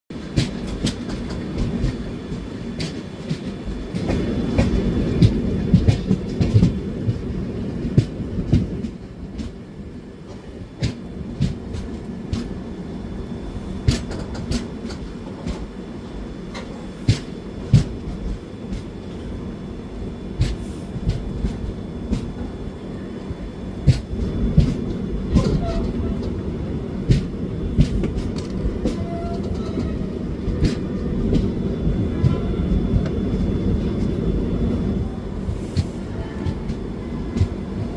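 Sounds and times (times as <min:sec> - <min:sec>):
train rumbling on track: 0:00.1 - 0:37.9
wheels clicking over rail joints: 0:00.2 - 0:09.6, 0:13.8 - 0:15.8, 0:23.8 - 0:26.4, 0:27.0 - 0:32.4.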